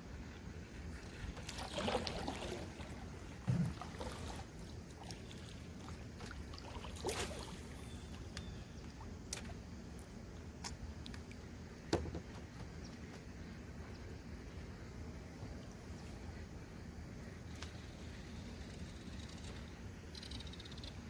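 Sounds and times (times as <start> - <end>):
canoe moving on water: 0.2 - 9.2
water splashes: 1.0 - 10.7.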